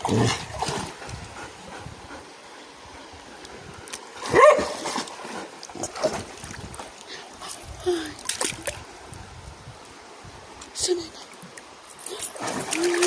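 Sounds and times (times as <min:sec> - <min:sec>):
dog barking: 0:04.3 - 0:04.8.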